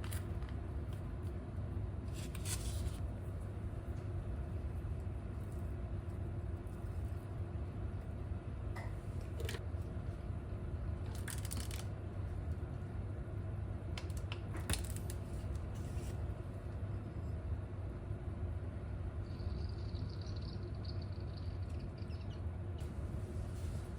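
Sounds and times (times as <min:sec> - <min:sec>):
range hood fan humming: 0:00.0 - 0:23.9
crisp clicks and crackles: 0:11.0 - 0:12.0.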